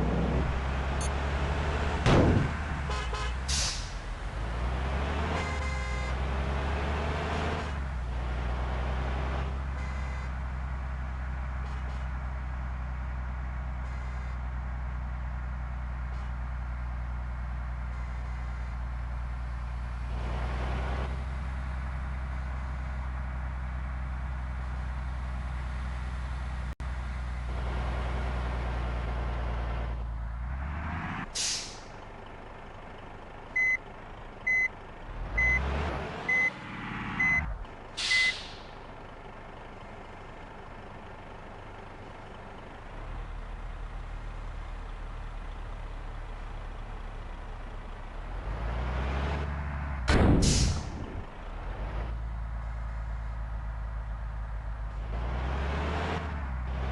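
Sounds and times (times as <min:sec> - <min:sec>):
bus diesel engines idling: 0:00.0 - 0:30.6, 0:31.2 - 0:56.9
air brake hiss: 0:03.5 - 0:04.0, 0:31.4 - 0:31.9, 0:38.0 - 0:38.7, 0:50.4 - 0:50.9
reversing beeper: 0:37.2 - 0:38.4.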